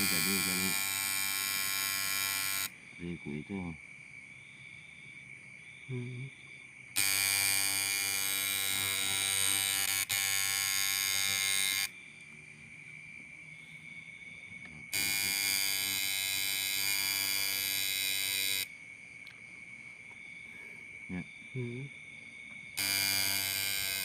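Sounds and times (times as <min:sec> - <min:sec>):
tattoo machine buzzing: 0:00.0 - 0:02.8, 0:07.0 - 0:12.0, 0:14.9 - 0:18.7, 0:22.8 - 0:24.0.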